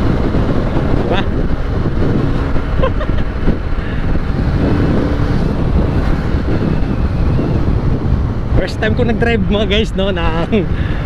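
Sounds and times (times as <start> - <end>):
motorcycle engine running: 0.0 - 8.6
wind buffeting microphone: 0.0 - 11.0.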